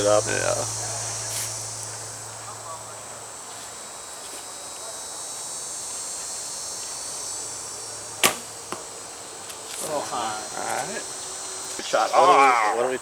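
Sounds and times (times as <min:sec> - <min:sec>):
insects buzzing: 0:00.0 - 0:13.0
bowstring snap: 0:08.2 - 0:08.8
arrow striking foam target: 0:08.2 - 0:08.9.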